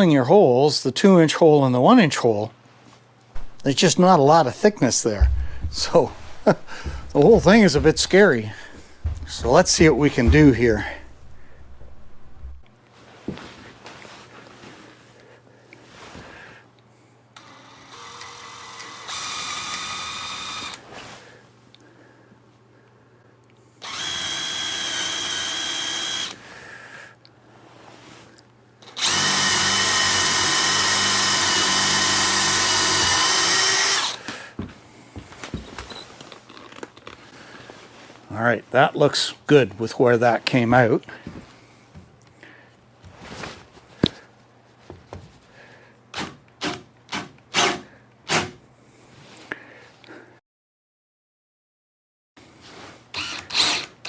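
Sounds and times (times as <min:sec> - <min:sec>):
wood knock: 0:03.4 - 0:12.7
wood rubbing strokes: 0:03.4 - 0:12.7
power drill boring into wood: 0:17.9 - 0:20.8, 0:23.8 - 0:26.4, 0:28.9 - 0:34.2, 0:53.1 - 0:54.0.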